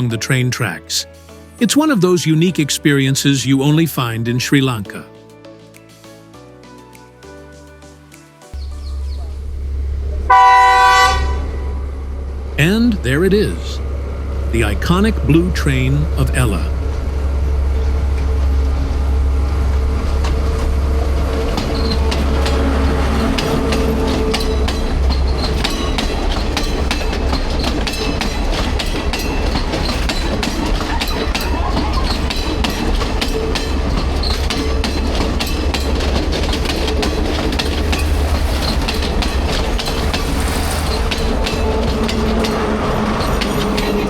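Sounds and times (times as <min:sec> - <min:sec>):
diesel train rumble: 0:08.6 - 0:44.0
wheels clacking over rail joints: 0:08.9 - 0:44.0.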